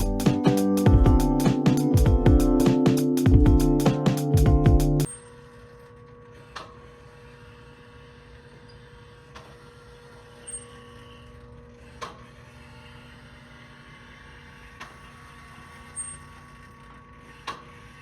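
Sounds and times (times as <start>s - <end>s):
background music: 0.0s - 5.1s.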